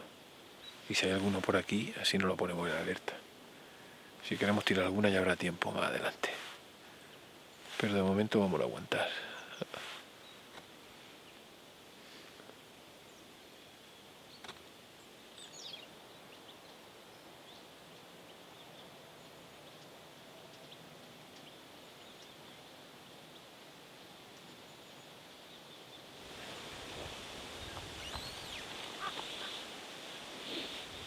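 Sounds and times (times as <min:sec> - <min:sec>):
faint steady hiss: 0:00.0 - 0:31.0
faint bird chirps: 0:27.6 - 0:29.7.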